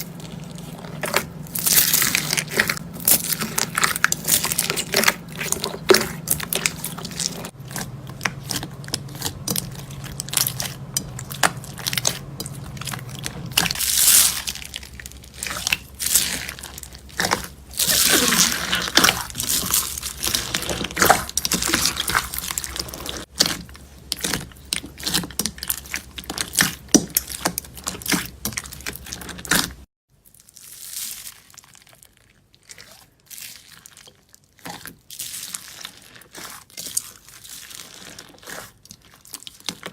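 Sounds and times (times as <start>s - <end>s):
low hum: 0.0s - 23.3s
slime crackling and squishing: 0.0s - 39.9s.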